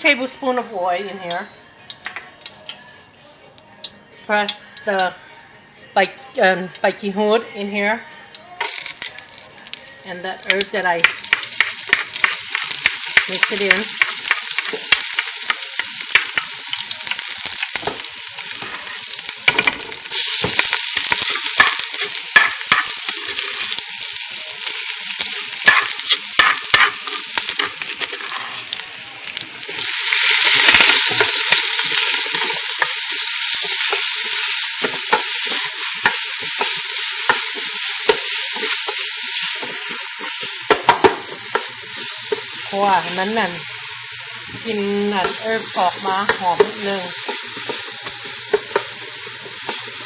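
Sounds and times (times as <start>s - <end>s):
herb paste sizzling in oil: 8.6s - 50.0s
utensil scraping a pot: 25.6s - 28.8s, 29.7s - 41.6s.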